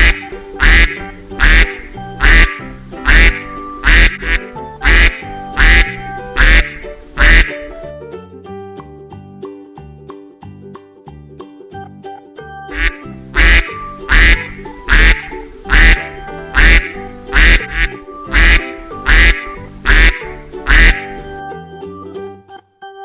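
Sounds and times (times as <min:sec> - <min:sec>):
duck quacking: 0:00.0 - 0:07.7, 0:12.7 - 0:21.3
background music: 0:00.0 - 0:23.0.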